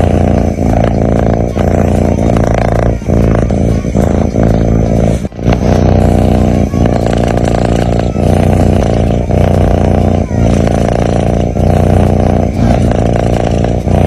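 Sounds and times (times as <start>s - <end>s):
cat breathing loudly: 0.0s - 14.0s.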